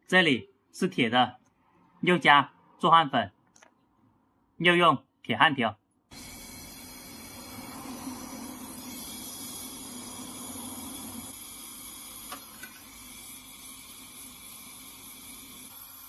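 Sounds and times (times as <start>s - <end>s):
brazing torch flame hissing: 6.1s - 16.0s.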